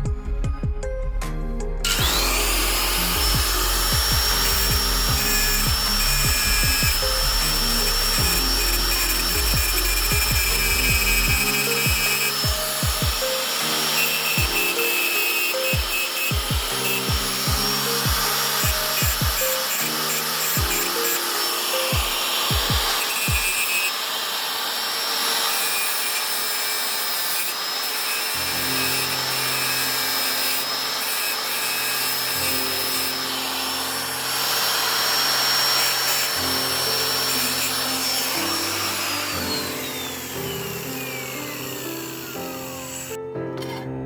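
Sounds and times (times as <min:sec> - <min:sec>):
background music with bass line: 0:00.0 - 0:13.2
power tool whining and grinding: 0:00.0 - 0:44.0.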